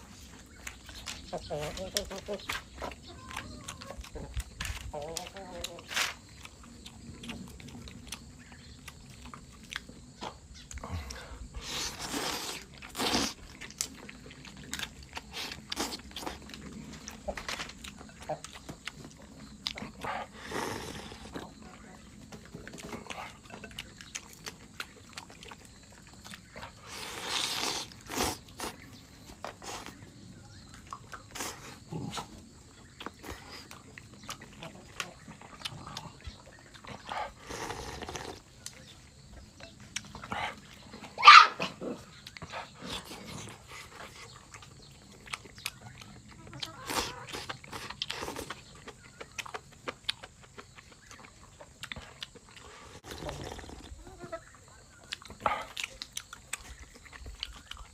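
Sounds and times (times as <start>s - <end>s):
person chewing and biting food: 0.0s - 21.6s, 22.4s - 30.0s, 42.1s - 54.0s, 55.0s - 57.9s
wet mouth clicks: 55.1s - 57.9s.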